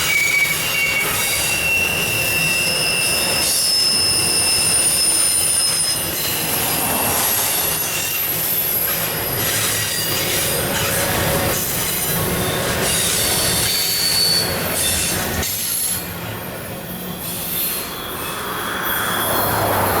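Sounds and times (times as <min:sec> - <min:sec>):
high wheel squeals: 0:00.0 - 0:16.3, 0:16.9 - 0:20.0
train wheels rumbling on rail: 0:00.0 - 0:20.0.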